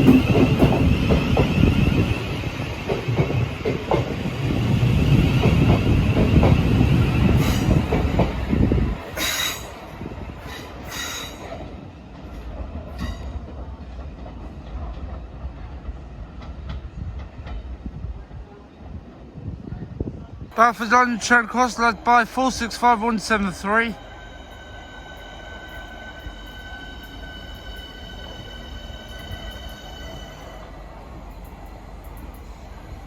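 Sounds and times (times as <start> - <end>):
electric train rumbling past: 0.0 - 33.0
wheel squeal on rails: 10.4 - 11.6.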